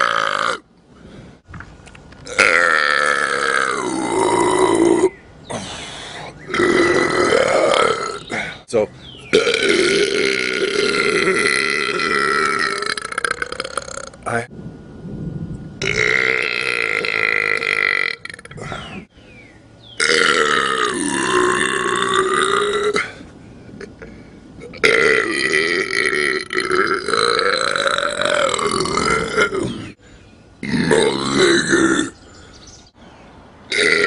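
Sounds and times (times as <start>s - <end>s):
long loud burps: 0.0s - 0.6s, 2.2s - 5.7s, 6.5s - 8.5s, 9.3s - 14.3s, 15.8s - 19.0s, 20.0s - 30.0s, 30.6s - 32.2s, 33.7s - 34.0s.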